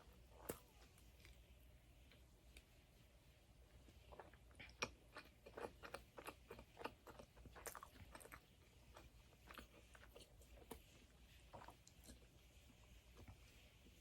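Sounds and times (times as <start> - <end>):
chewing mouth clicks and smacks: 4.1 - 10.8.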